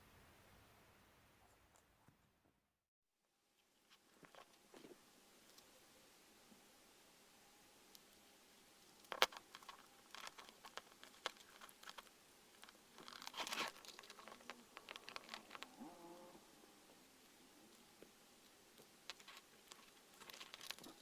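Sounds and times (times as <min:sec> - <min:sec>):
clicks and crinkling of small parts: 0:08.9 - 0:15.9, 0:18.8 - 0:21.0.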